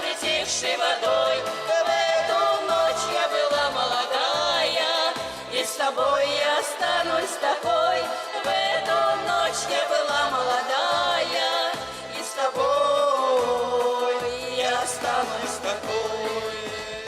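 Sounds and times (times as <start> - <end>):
folk ensemble singing in harmony: 0.0 - 17.0
steady musical accompaniment: 0.0 - 17.0.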